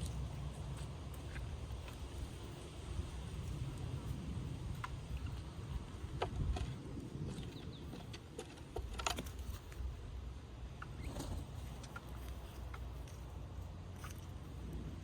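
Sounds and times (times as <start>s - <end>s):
steady low rumble: 0.0s - 8.8s, 9.6s - 15.0s
birds chirping: 7.2s - 8.5s.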